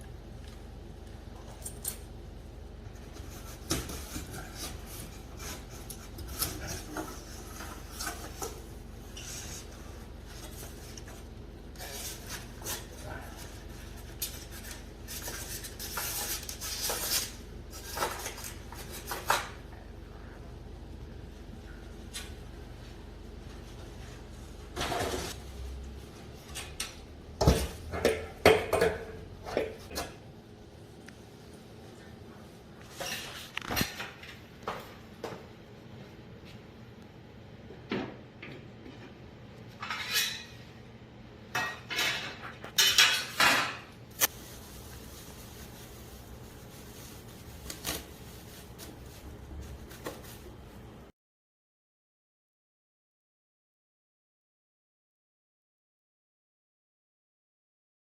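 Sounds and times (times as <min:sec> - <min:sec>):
scraping and rubbing of hard parts: 0:11.8 - 0:19.5.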